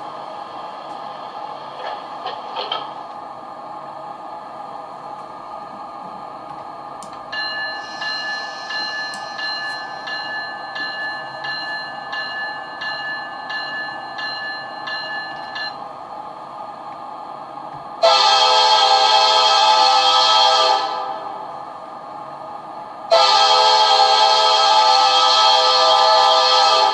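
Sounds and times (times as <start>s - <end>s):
locomotive bell ringing: 7.3s - 15.8s.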